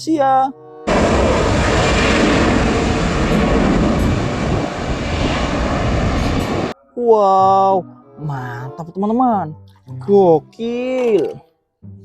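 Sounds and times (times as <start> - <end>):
jet engines rushing: 0.9 - 6.8.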